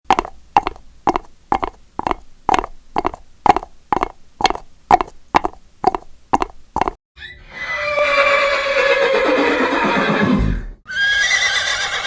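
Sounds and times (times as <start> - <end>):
horse hoofbeats on hard ground: 0.0 - 7.0.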